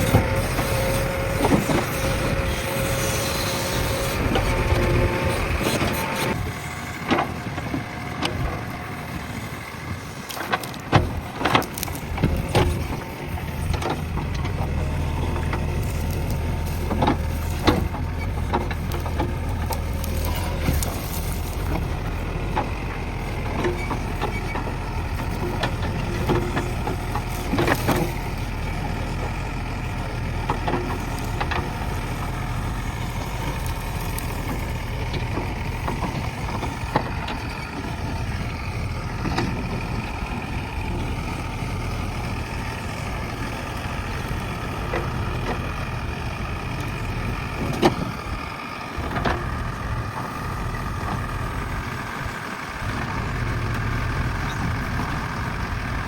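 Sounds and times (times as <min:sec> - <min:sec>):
diesel engine running: 0:00.0 - 0:56.0.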